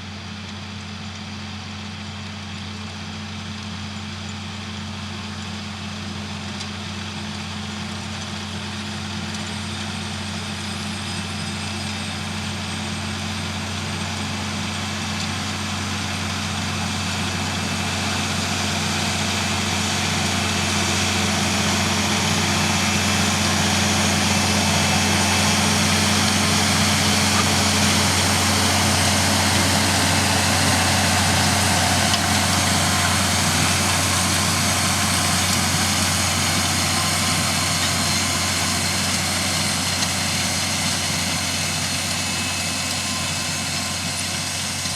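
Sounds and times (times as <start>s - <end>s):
tractor diesel engine running: 0.0s - 44.9s.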